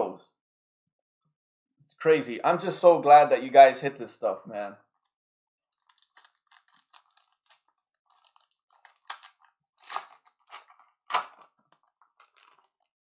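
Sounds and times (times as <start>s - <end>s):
foil pack crinkling: 5.8s - 12.9s.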